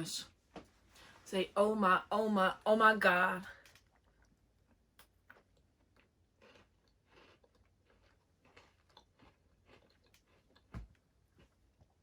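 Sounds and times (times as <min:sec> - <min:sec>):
cookie chewing crunches: 0:03.6 - 0:12.0.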